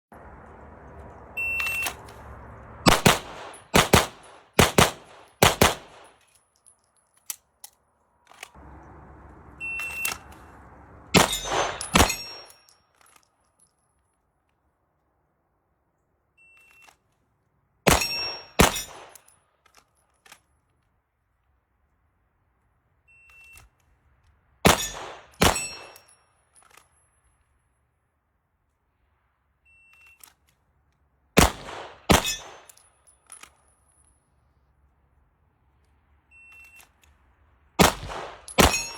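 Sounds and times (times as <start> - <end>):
gunshots: 2.8 - 6.1, 11.1 - 12.5, 17.9 - 19.1, 31.4 - 32.7, 37.8 - 38.9
metallic ringing of steel targets: 11.1 - 13.2, 17.9 - 19.4, 24.7 - 27.0, 31.7 - 34.1, 37.8 - 38.9.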